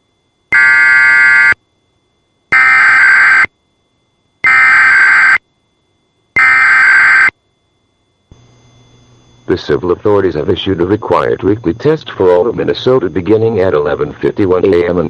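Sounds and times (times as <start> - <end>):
warbling digital data tones: 0.5 - 1.6, 2.5 - 3.5, 4.4 - 5.4, 6.4 - 7.3, 9.4 - 15.0.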